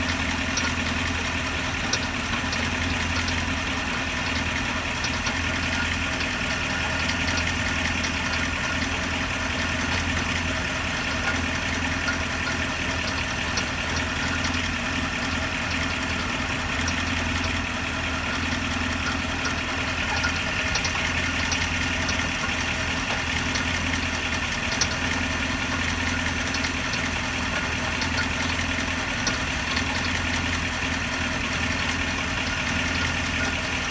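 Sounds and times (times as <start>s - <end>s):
car engine idling: 0.0s - 33.9s
faint ticks: 1.8s - 3.6s, 4.2s - 9.1s, 18.2s - 33.9s.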